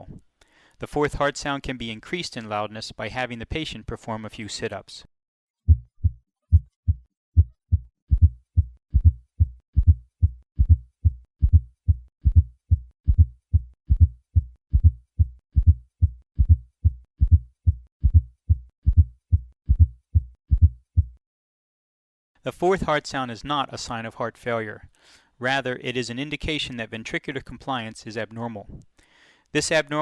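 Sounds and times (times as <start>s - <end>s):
heartbeat with low thumps: 5.7s - 21.2s.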